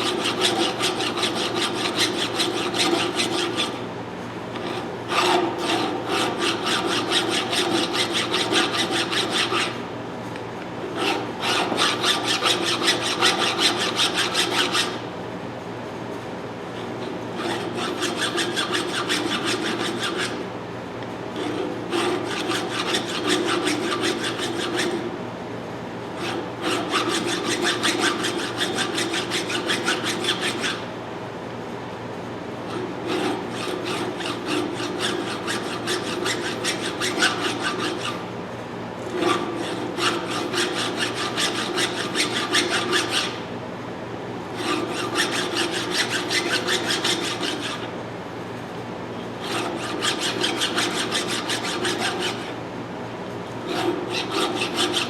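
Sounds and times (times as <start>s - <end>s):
hand file rasping on steel: 0.0s - 3.8s, 4.6s - 9.8s, 11.0s - 15.1s, 17.4s - 20.4s, 21.4s - 25.1s, 26.2s - 30.9s, 32.7s - 38.2s, 39.1s - 43.4s, 44.6s - 47.9s, 49.4s - 52.6s, 53.7s - 55.0s.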